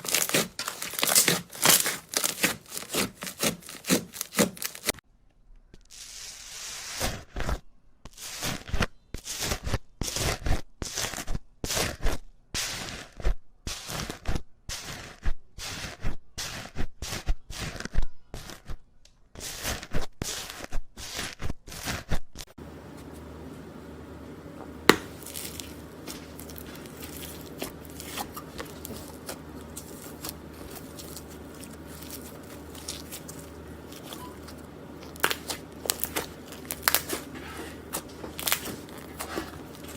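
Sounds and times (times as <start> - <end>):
slime crackling and crunching: 0.0 - 5.0, 24.9 - 39.9.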